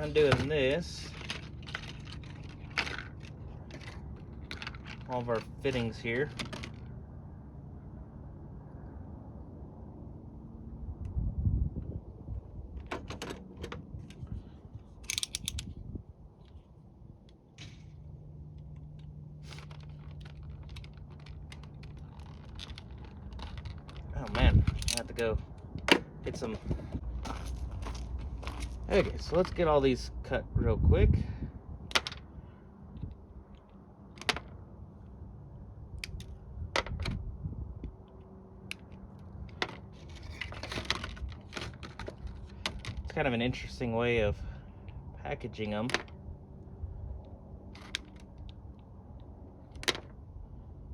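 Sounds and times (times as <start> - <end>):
plastic rattling and rustling: 0.1 - 6.9, 18.7 - 29.6, 39.4 - 43.1
metal tool clicks and knocks: 15.0 - 15.7.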